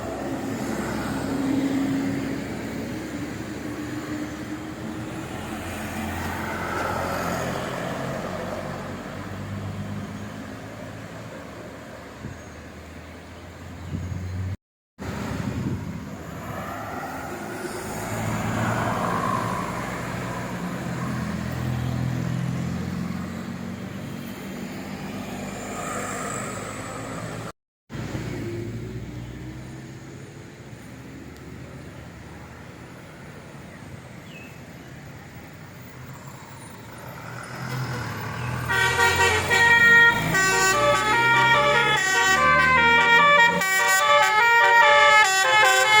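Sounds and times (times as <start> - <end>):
large vehicles passing: 0.0 - 46.0.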